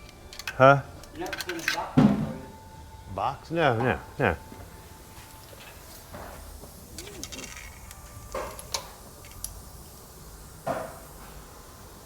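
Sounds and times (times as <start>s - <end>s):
metallic clicks of hand tools: 0.0s - 1.9s, 7.0s - 9.6s.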